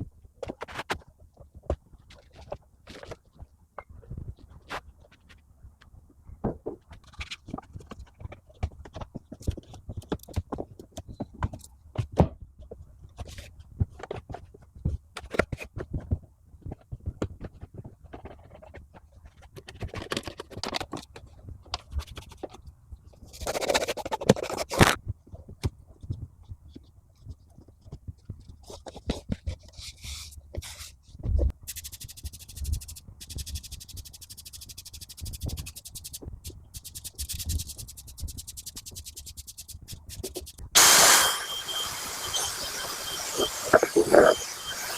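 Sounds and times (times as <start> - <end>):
rubbing: 31.6 - 40.9.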